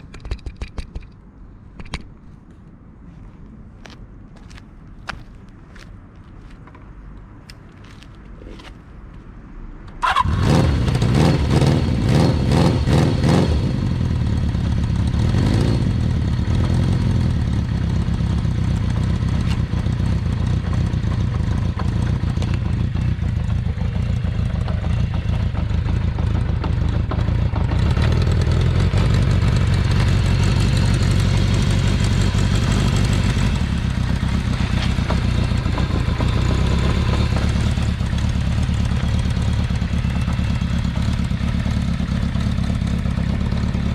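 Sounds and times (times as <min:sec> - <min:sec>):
motorcycle engine revving and idling: 0:10.0 - 0:43.9.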